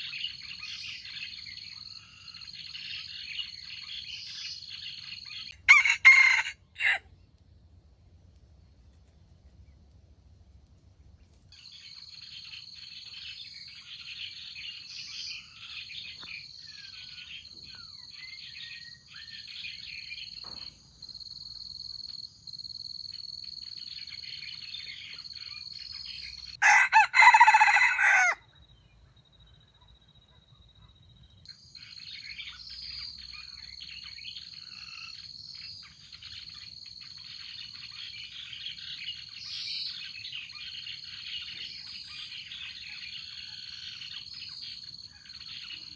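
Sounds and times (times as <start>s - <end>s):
small birds chirping: 0.0s - 20.8s, 23.1s - 45.9s
rooster crowing: 5.6s - 7.1s, 26.6s - 28.4s.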